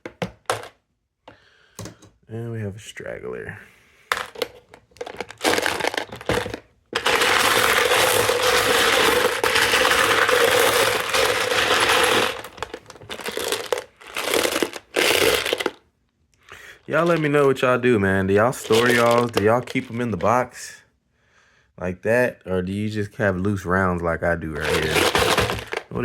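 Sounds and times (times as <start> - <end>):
brass cartridges rattling in can: 4.1 - 15.8, 18.5 - 20.4, 24.6 - 26.0.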